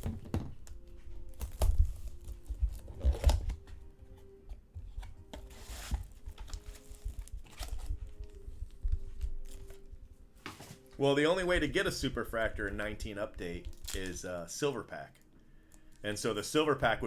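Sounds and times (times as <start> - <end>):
cards rustling: 0.1 - 14.5
card packs being torn open: 1.2 - 3.7, 5.2 - 8.4, 13.4 - 14.4.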